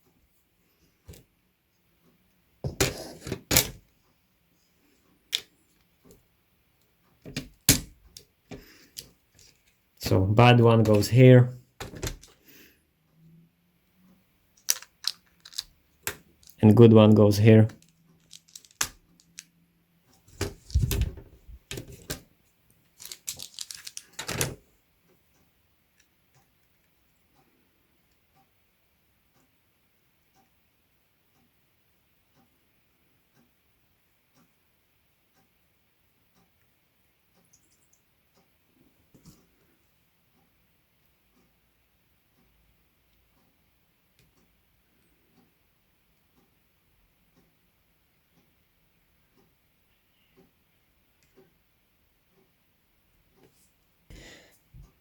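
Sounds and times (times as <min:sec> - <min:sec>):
plastic keyboard parts clicking: 0:11.8 - 0:12.4, 0:14.6 - 0:16.6, 0:17.7 - 0:19.4, 0:20.4 - 0:22.2, 0:23.0 - 0:24.6.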